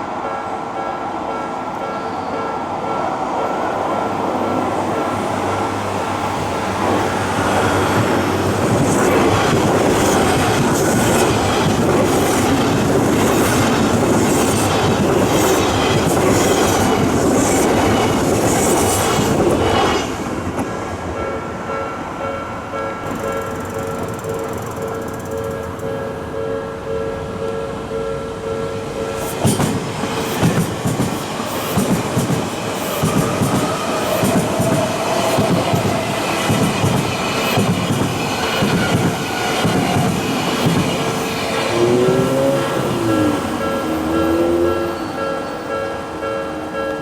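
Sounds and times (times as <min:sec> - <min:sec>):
train passing at speed: 0:00.0 - 0:47.0
wheels clacking over rail joints: 0:28.8 - 0:44.8.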